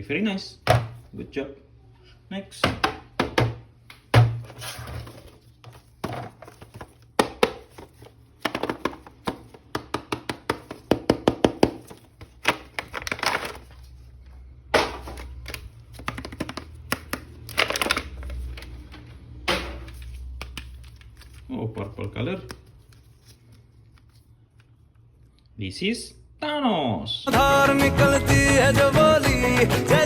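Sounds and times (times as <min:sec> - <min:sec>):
plastic packaging clicks and taps: 0:05.7 - 0:13.6, 0:14.9 - 0:18.7, 0:19.8 - 0:21.3
plastic crinkling: 0:12.0 - 0:14.2, 0:15.0 - 0:18.9.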